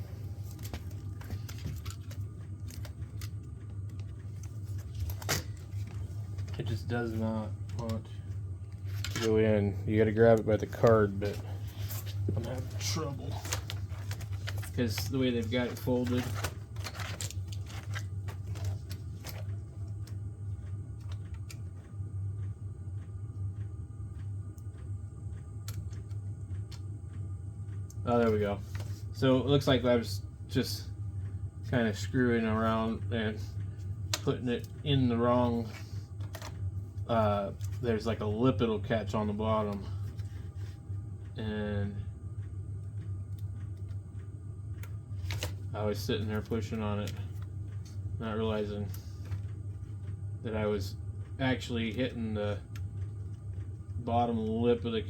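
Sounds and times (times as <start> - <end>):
steady low hum: 0.0 - 55.0
plastic laptop parts clicking: 15.6 - 19.5, 36.2 - 36.6, 45.2 - 45.6.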